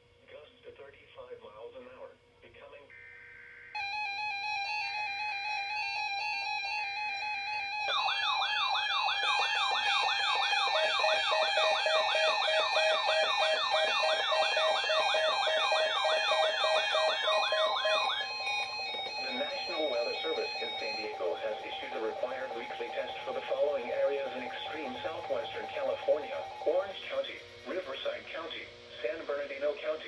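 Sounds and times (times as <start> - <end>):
fast warbling siren-like tone: 3.0 - 28.3
beeping tone: 3.8 - 27.0
lower pulsing beep: 3.8 - 28.4
weather radio steady tones: 3.8 - 30.0.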